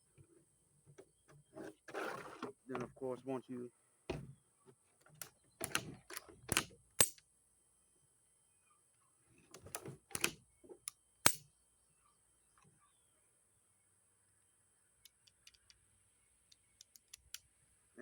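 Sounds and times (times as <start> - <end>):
metal gun parts clicking and clunking: 5.0 - 7.2, 9.6 - 11.4.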